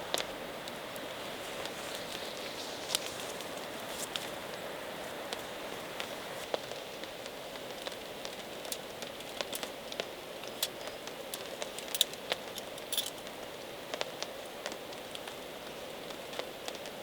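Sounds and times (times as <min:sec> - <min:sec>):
rain falling: 0:00.0 - 0:17.0
sharp ticks and pops: 0:05.3 - 0:17.0.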